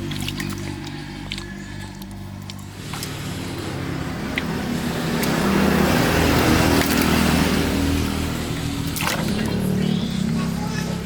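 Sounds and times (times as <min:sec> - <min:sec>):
small engine running: 0:02.8 - 0:11.0.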